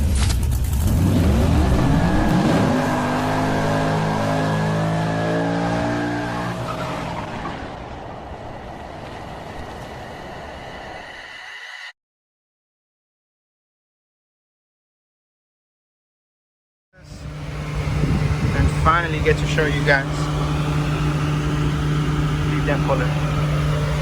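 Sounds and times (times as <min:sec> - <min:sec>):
engine revving: 0:00.2 - 0:09.9, 0:17.0 - 0:24.0.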